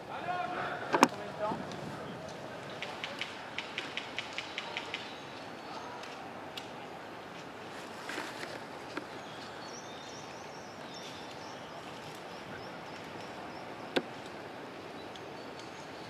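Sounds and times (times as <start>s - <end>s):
bird chirping: 9.0s - 14.2s.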